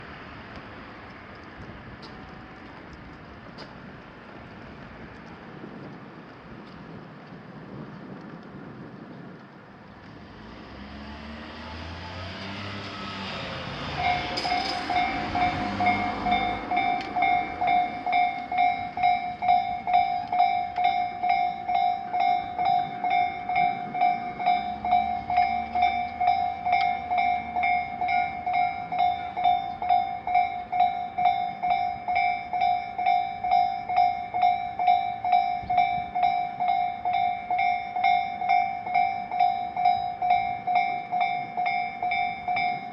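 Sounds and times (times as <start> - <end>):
passing vehicle rushing: 10.2 - 18.8
level crossing warning bell: 12.6 - 42.9.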